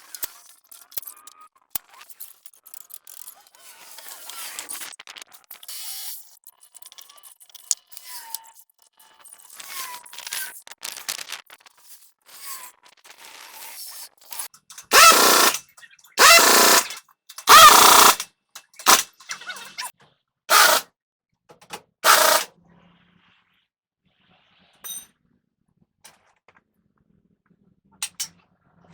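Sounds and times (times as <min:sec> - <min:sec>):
clinks and scrapes: 0:00.0 - 0:19.9, 0:28.0 - 0:28.4
power tool bursts: 0:14.8 - 0:15.6, 0:16.2 - 0:19.2, 0:20.5 - 0:20.8, 0:22.0 - 0:22.5.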